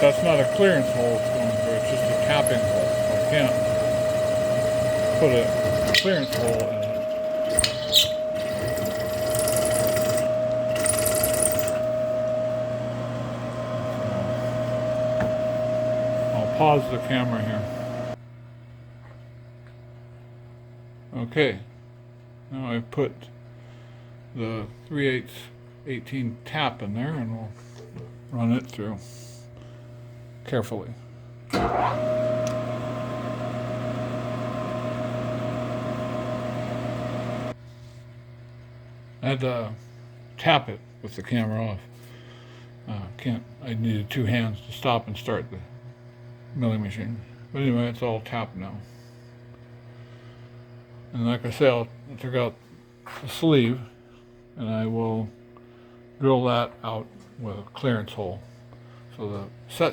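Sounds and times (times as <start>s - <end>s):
drill bit cutting cast iron: 0.0s - 12.2s
milling machine whine: 0.0s - 18.2s, 31.5s - 37.6s.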